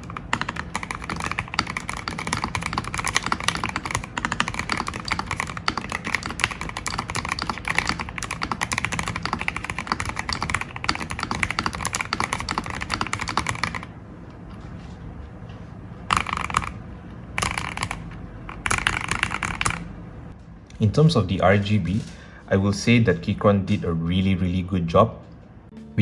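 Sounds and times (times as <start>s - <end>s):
mechanical keyboard typing: 0.0s - 13.9s, 16.1s - 16.8s, 17.4s - 19.9s.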